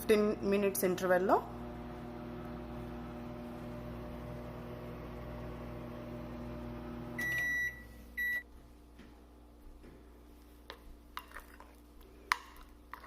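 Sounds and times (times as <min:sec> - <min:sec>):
microwave oven humming: 0:00.0 - 0:08.5
microwave beeps: 0:05.9 - 0:08.5.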